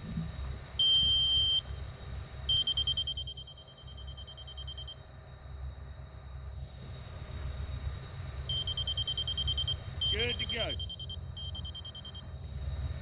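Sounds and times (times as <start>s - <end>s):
receiver beeping: 0.8s - 1.6s, 8.5s - 12.3s
diesel engine idling: 8.5s - 12.2s.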